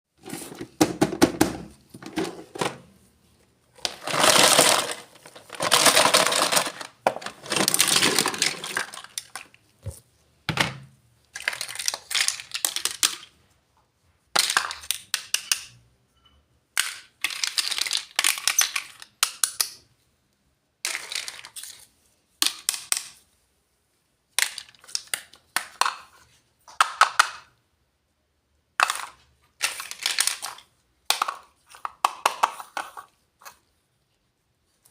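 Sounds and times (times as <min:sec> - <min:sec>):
plastic packaging crinkling: 0:03.8 - 0:09.6
small plastic pieces clicking: 0:11.4 - 0:13.3, 0:14.4 - 0:15.8, 0:16.8 - 0:19.9, 0:22.4 - 0:23.2, 0:28.8 - 0:33.6.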